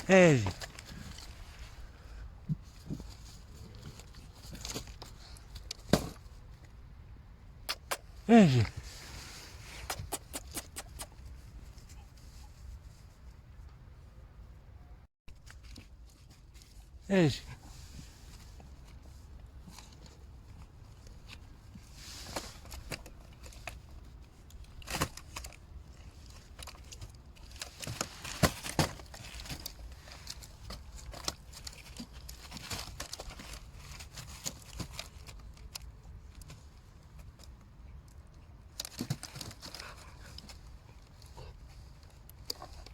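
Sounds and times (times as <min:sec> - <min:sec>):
rustling and crinkling: 0:00.0 - 0:14.2, 0:15.3 - 0:42.9.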